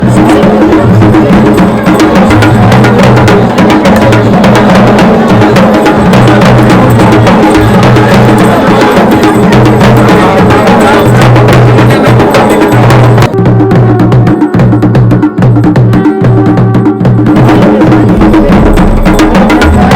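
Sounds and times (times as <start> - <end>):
fast dense percussion music: 0.0 - 19.9
sustained low notes: 17.5 - 19.9.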